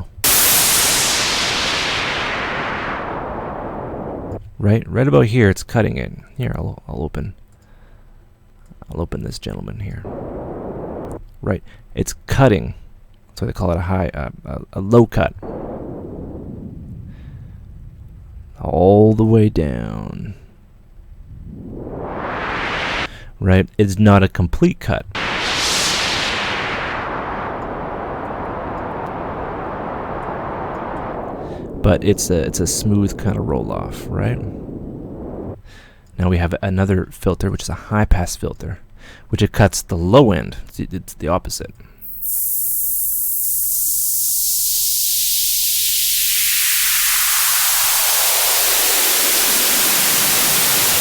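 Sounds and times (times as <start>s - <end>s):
filtered white noise hiss: 0.0s - 4.4s, 9.0s - 11.6s, 13.7s - 23.4s, 25.0s - 36.7s, 42.0s - 51.0s.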